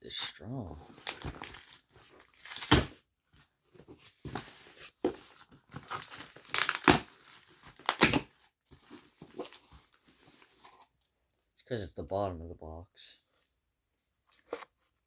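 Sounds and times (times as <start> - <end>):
cardboard box ripping: 5.8 - 8.3.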